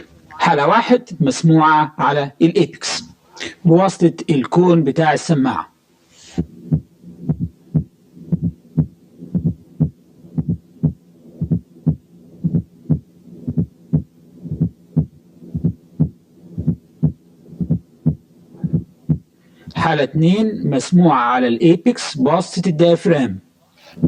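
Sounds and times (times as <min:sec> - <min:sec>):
heartbeat through stethoscope: 0:06.4 - 0:19.3
low heart murmur: 0:06.4 - 0:19.3.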